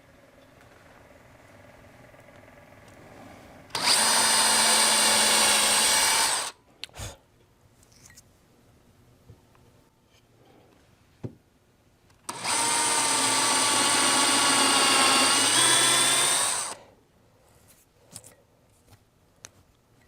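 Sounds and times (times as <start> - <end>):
drill boring into wood: 3.7 - 6.6, 12.3 - 16.8.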